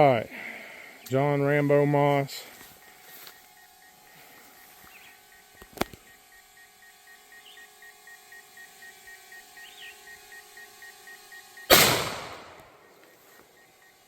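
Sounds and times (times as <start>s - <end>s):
faint steady hum: 0.0s - 14.0s
bird chirps: 4.6s - 6.4s, 7.1s - 8.2s, 9.1s - 10.4s.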